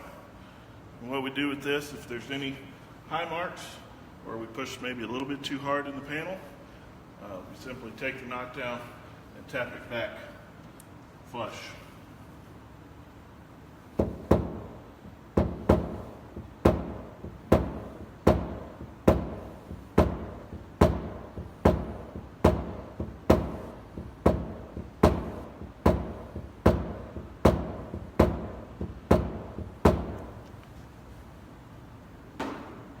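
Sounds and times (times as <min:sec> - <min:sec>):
hammer tapping on metal panel: 0:14.0 - 0:30.4.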